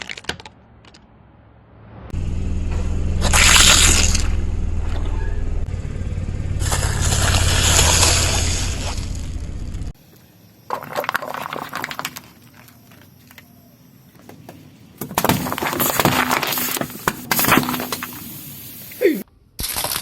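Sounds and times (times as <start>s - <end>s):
objects crunching under car tyre: 6.6s - 9.7s, 14.1s - 18.2s.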